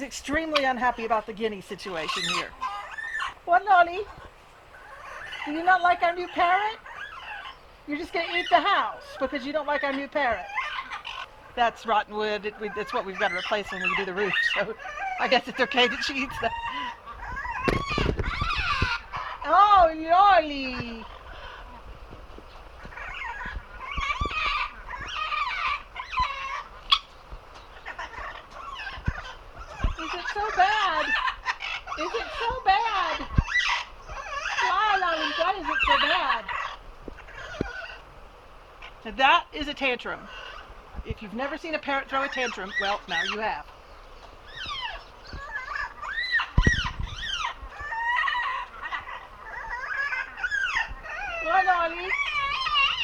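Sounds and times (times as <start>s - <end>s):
parrot squawking: 0.6s - 21.9s, 27.7s - 38.1s, 38.8s - 43.8s.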